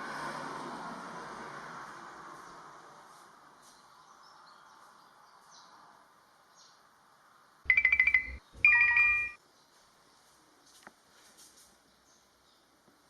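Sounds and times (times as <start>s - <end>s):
electronic chime: 7.7s - 9.4s
short electronic beeps: 7.7s - 9.4s.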